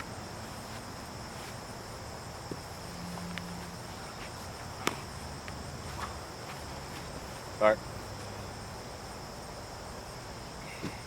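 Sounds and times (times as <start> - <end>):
crickets chirring: 0.0 - 11.0.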